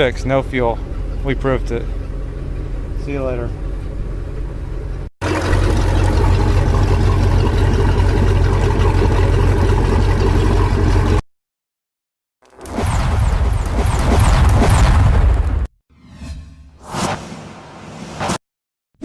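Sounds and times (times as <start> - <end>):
boat engine running: 0.1 - 11.2.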